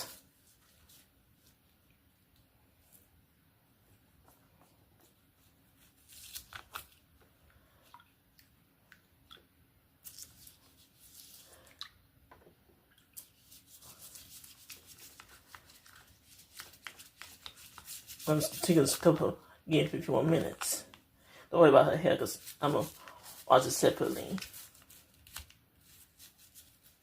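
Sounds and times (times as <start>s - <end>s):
scrubbing on plastic doll: 4.2s - 7.2s, 10.0s - 11.8s, 13.0s - 19.3s, 22.0s - 27.0s.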